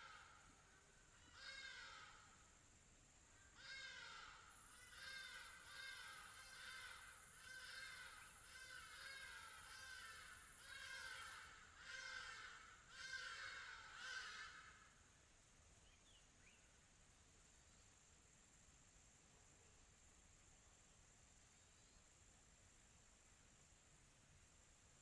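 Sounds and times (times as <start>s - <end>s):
high-pitched insect whine: 3.3s - 14.9s.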